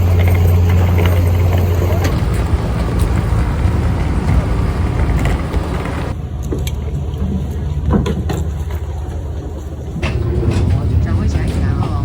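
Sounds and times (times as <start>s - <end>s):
engine running steadily: 0.0s - 12.0s
wind rushing over microphone: 2.0s - 6.2s.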